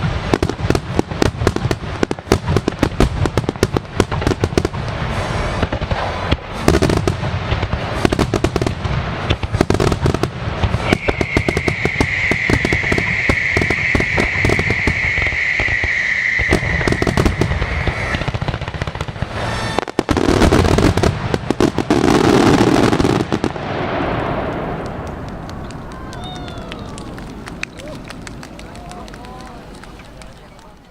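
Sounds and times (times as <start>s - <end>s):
fireworks bangs and crackling: 0.0s - 30.9s
high whistling tone: 10.8s - 18.4s.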